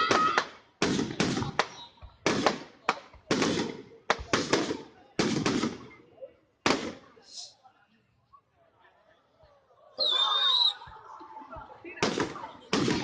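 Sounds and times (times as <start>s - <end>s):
fireworks bangs with echoing rumble: 0.0s - 6.0s, 6.7s - 7.1s, 12.0s - 13.0s.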